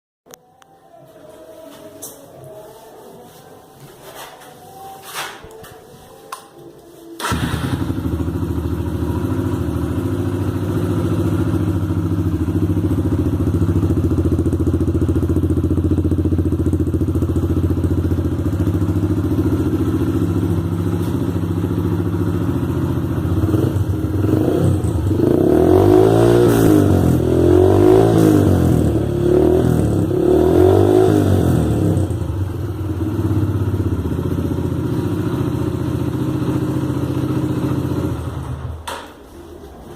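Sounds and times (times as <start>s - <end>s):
motorcycle engine idling and revving: 7.2s - 39.1s.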